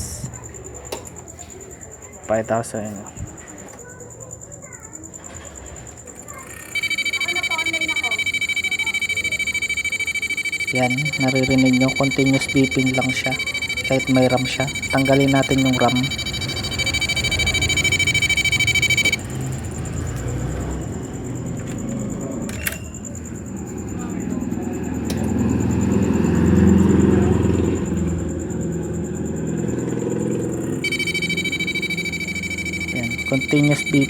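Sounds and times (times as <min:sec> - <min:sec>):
continuous high beep: 0:06.4 - 0:20.4, 0:21.2 - 0:34.0.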